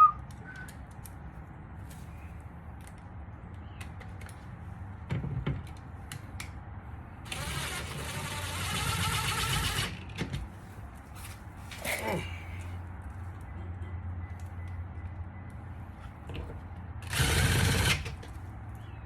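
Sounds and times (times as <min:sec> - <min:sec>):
power tool buzzing whir: 0:07.3 - 0:09.9, 0:17.0 - 0:18.1.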